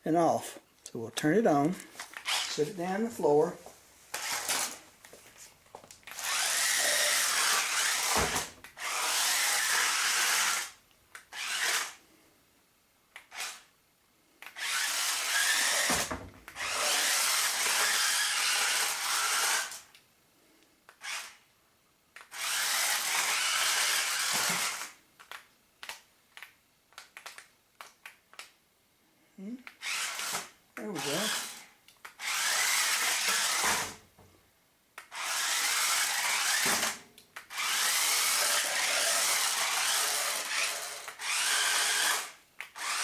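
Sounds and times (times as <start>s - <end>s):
toy car electric motors whirring: 2.0s - 2.6s, 4.1s - 4.8s, 6.0s - 12.0s, 13.2s - 13.7s, 14.4s - 20.0s, 20.9s - 21.5s, 22.2s - 27.5s, 29.6s - 34.0s, 35.0s - 43.0s.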